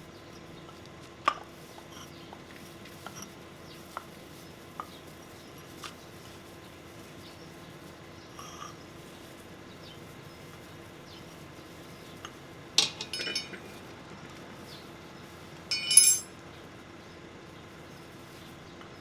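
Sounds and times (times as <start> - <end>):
faint steady hum: 12.1 - 19.0
metal tools clinking: 12.8 - 13.7, 15.7 - 16.3.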